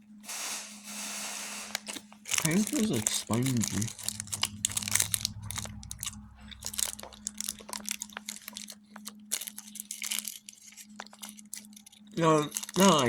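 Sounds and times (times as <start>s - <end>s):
steady low hum: 2.3s - 8.8s.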